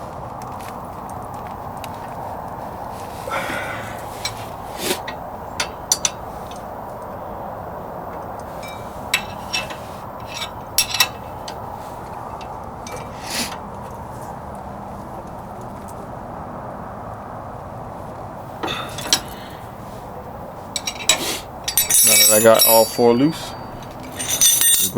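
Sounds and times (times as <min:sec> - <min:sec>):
steady background hum: 0:00.0 - 0:24.9
metal wrenches clinking: 0:03.9 - 0:06.7, 0:08.5 - 0:11.8, 0:12.4 - 0:13.6, 0:18.6 - 0:19.9, 0:20.7 - 0:24.9.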